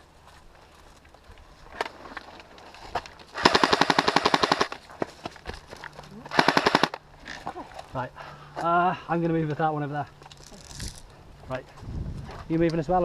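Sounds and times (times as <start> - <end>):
airsoft gun full-auto burst: 3.4 - 4.8, 6.3 - 7.0.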